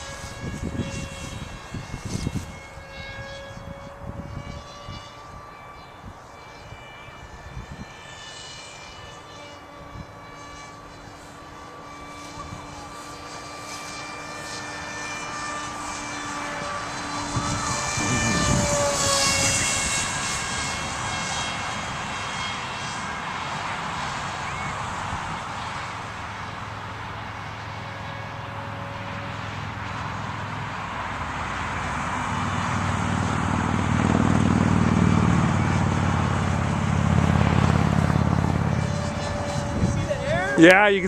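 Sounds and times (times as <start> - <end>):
wind buffeting microphone: 0.0 - 6.3, 7.2 - 8.2, 15.8 - 23.0, 32.4 - 41.0
rc plane electric motor whining: 0.0 - 41.0.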